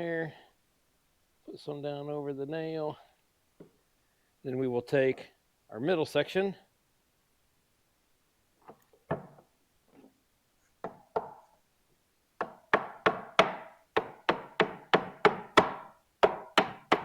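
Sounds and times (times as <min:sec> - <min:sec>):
knocks on a wooden log: 0:10.8 - 0:11.4, 0:12.4 - 0:17.0.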